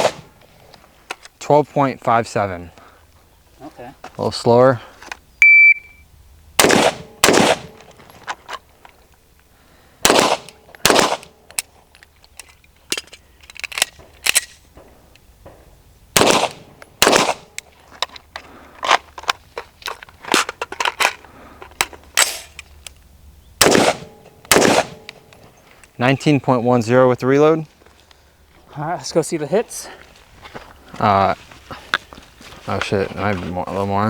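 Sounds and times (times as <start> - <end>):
loud gunshots: 0.0 - 0.3, 6.6 - 7.8, 10.0 - 11.3, 16.2 - 17.5, 23.6 - 25.0.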